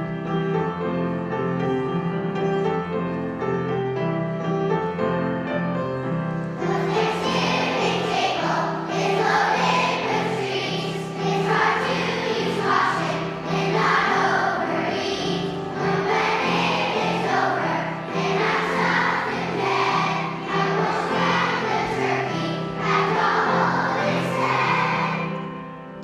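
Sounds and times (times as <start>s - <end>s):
instrumental accompaniment: 0.0s - 26.0s
children's choir singing: 6.1s - 26.0s.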